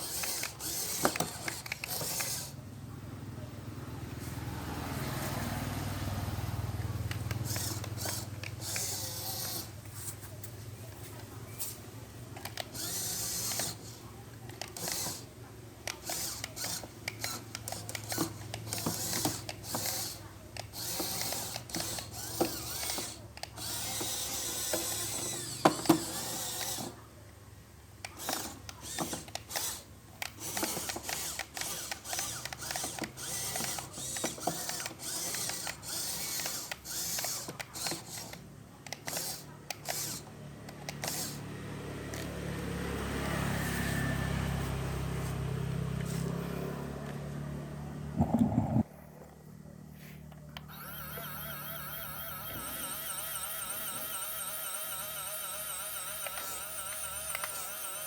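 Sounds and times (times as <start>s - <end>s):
small mechanism clicking and whirring: 0.0s - 2.6s, 6.8s - 11.0s, 11.6s - 27.0s, 28.0s - 41.4s, 50.6s - 58.0s
steady low hum: 48.0s - 49.7s.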